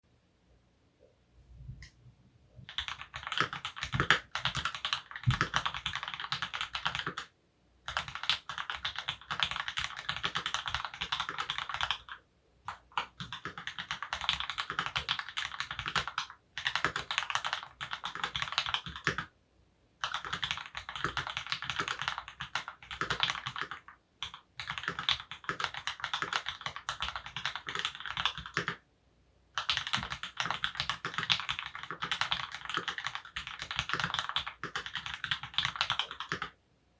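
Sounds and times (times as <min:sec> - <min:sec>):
fast typing on mechanical keyboard: 0:02.6 - 0:07.3, 0:07.9 - 0:19.3, 0:20.0 - 0:28.8, 0:29.6 - 0:36.6.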